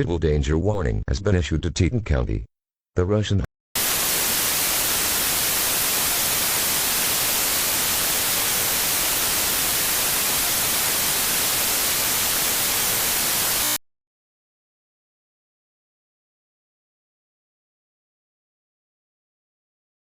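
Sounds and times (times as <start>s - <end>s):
broadcast static hiss: 3.8s - 13.8s.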